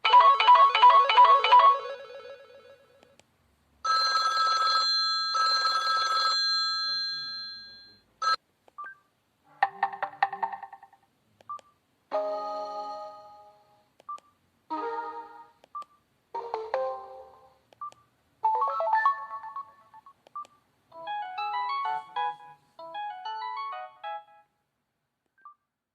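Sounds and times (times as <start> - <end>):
phone alert chiming tones: 18.5 - 20.1.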